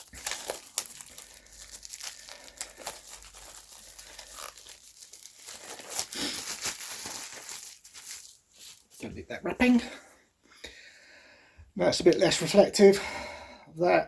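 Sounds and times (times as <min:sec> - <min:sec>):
knife cutting plastic wrap: 0:00.0 - 0:08.8
shrink-wrap crinkling: 0:00.0 - 0:09.1.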